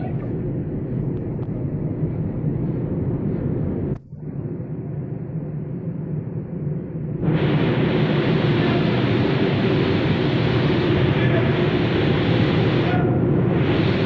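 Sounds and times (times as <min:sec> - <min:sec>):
factory machinery running: 0:07.2 - 0:14.0.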